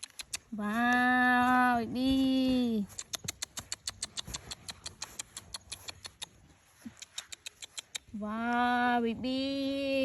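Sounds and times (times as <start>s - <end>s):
rapid small sharp clicks: 0.0s - 0.5s, 2.9s - 8.2s.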